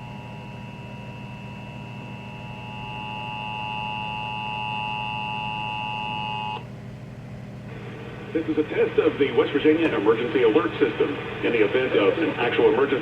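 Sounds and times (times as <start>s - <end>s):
two-tone alarm tone: 1.0s - 6.6s.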